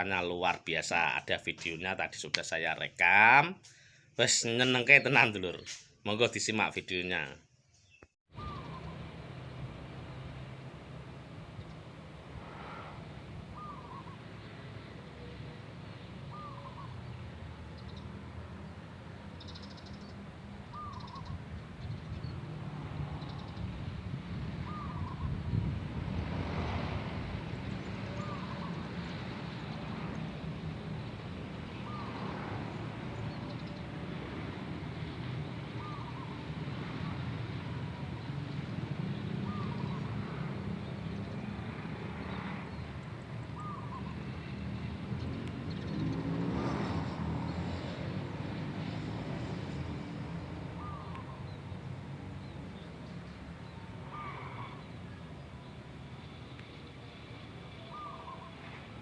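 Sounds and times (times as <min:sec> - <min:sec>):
zebra dove cooing: 0:28.1 - 0:28.9, 0:39.4 - 0:40.4, 0:50.8 - 0:51.4, 0:54.0 - 0:54.9, 0:57.9 - 0:58.6.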